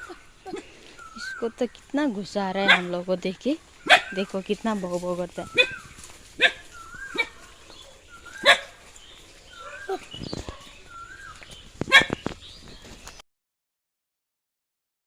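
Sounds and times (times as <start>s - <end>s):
dog barking angrily: 2.6s - 3.0s, 3.8s - 4.3s, 6.4s - 8.8s, 9.5s - 10.8s, 11.9s - 12.2s.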